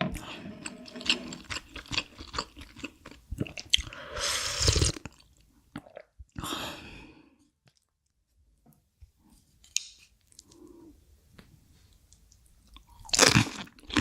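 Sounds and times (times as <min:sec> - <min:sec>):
soft chewing: 0:09.3 - 0:14.0.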